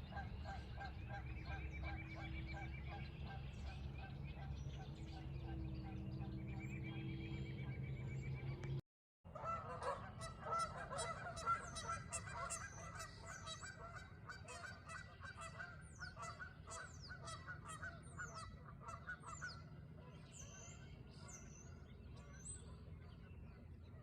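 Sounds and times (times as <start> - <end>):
flock of birds honking: 9.4 - 19.6.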